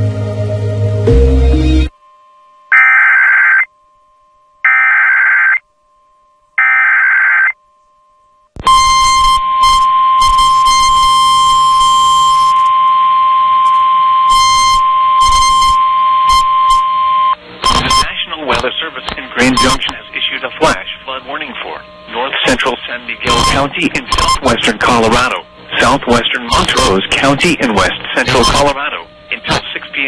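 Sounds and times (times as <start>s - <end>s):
screechy digital data tones: 2.7s - 3.7s, 4.6s - 5.6s, 6.6s - 7.6s, 8.7s - 12.7s, 13.6s - 16.9s, 17.6s - 18.6s, 19.3s - 20.9s, 21.6s - 29.6s
steady high alert tone: 2.7s - 3.7s, 4.6s - 5.6s, 19.3s - 28.9s
radio static: 17.6s - 30.0s.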